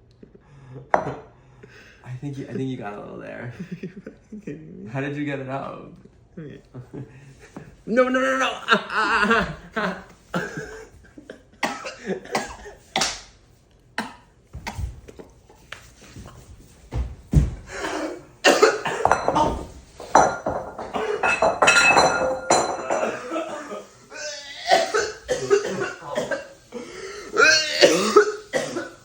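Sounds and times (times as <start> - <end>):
people coughing: 9.2 - 11.0, 11.6 - 13.2, 17.7 - 29.0
kitchenware knocks and clinks: 18.6 - 23.3.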